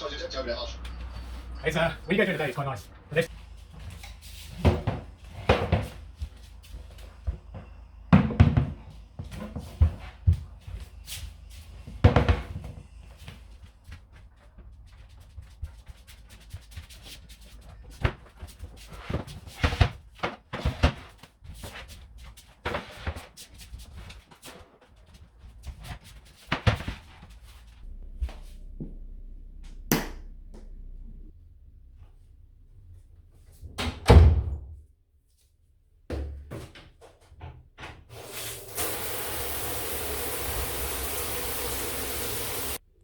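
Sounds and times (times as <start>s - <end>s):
irregular thuds and knocks: 4.5s - 11.1s
low steady hum: 27.6s - 33.9s.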